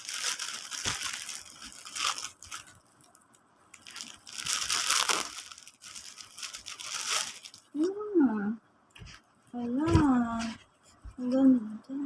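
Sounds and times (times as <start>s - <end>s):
packaging torn and crinkled: 0.0s - 7.8s.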